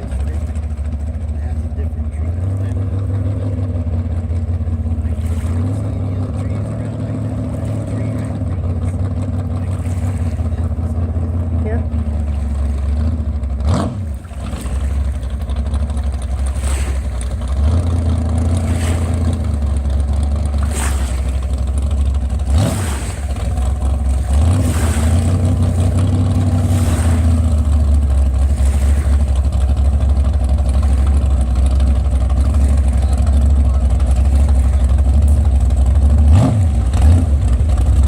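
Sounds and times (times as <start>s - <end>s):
boat engine running at speed: 0.0s - 38.0s.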